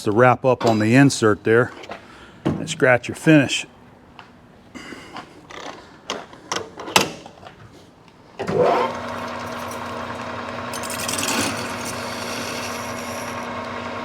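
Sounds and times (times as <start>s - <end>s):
metal lathe humming: 8.6s - 14.0s.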